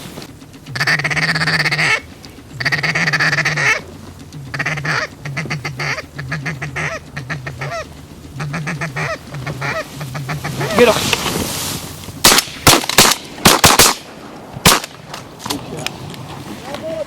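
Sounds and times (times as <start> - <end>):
waterfowl call notes: 0.6 - 11.0.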